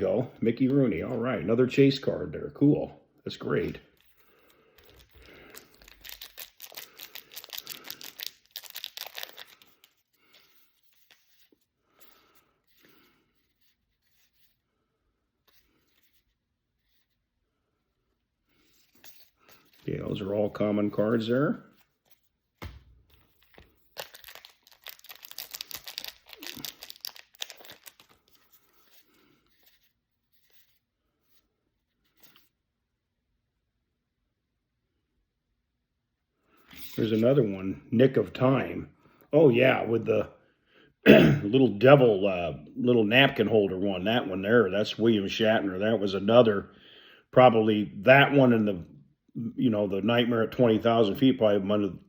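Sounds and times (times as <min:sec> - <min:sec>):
trading cards rustling and sliding: 0:03.4 - 0:14.6, 0:15.4 - 0:17.3, 0:18.5 - 0:32.6
wrapper tearing and crinkling: 0:04.9 - 0:11.2, 0:23.3 - 0:28.8.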